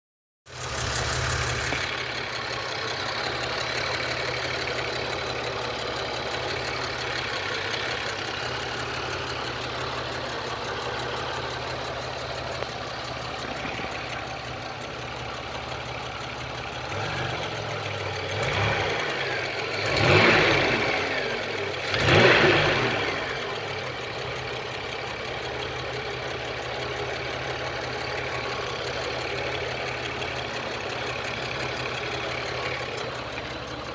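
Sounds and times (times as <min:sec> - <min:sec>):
engine idling with fast ticking: 0:00.4 - 0:33.9
engine revving: 0:00.5 - 0:12.7, 0:16.7 - 0:24.1.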